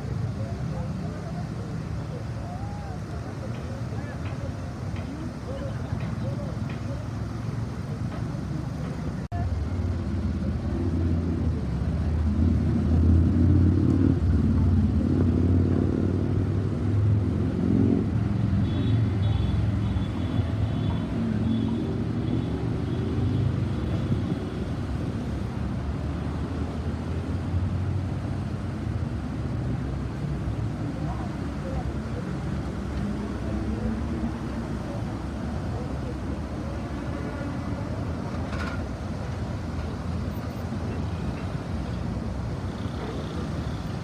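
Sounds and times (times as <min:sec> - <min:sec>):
vehicles passing: 0:00.0 - 0:44.0.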